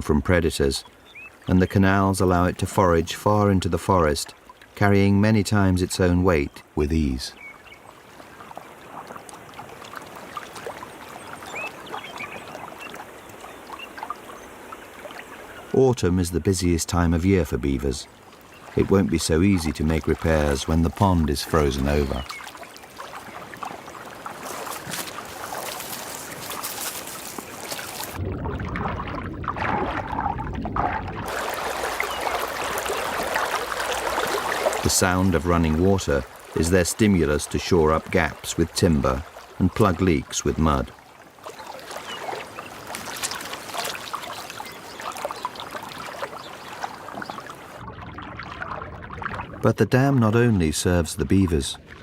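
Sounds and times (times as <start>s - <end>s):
water trickling: 7.3s - 15.8s, 16.8s - 49.6s
small splashes and drips: 7.4s - 15.7s, 18.1s - 40.1s, 40.9s - 49.5s.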